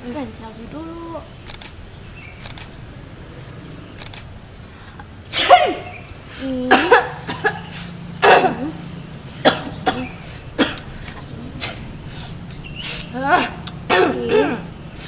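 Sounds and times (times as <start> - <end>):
person coughing: 5.4 - 8.8, 9.4 - 10.9, 13.4 - 14.7.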